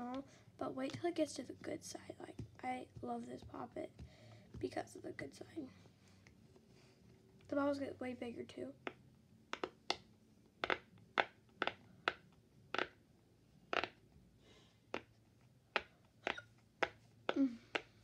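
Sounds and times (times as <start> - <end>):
pop-it toy bubbles popping: 8.9 - 10.0.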